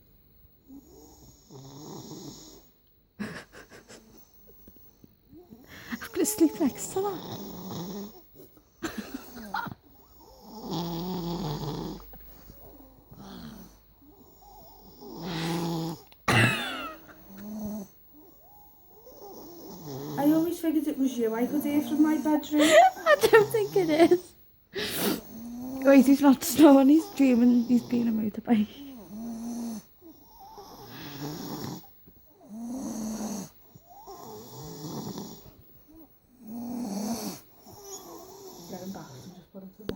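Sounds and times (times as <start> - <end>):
boy snoring loudly: 0.7 - 2.7, 5.4 - 8.2, 9.0 - 12.1, 12.7 - 20.7, 24.8 - 28.2, 28.8 - 35.6, 36.4 - 39.4
rasping breaths: 5.4 - 16.2, 24.7 - 35.7, 36.4 - 39.5.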